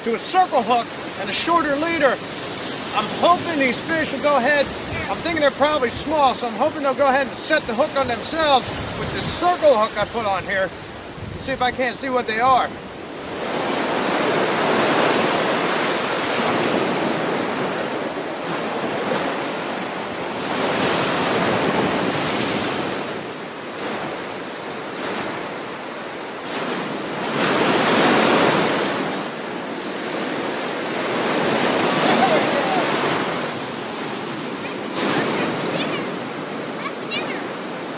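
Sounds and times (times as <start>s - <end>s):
surf breaking on sandy beach: 0.0s - 37.9s
wind on microphone: 2.5s - 6.3s, 7.6s - 24.4s.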